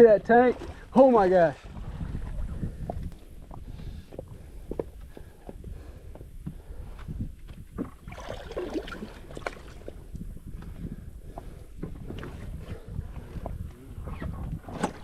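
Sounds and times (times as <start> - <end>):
wind rumbling on microphone: 0.0 - 15.0
water splashing: 7.8 - 10.0.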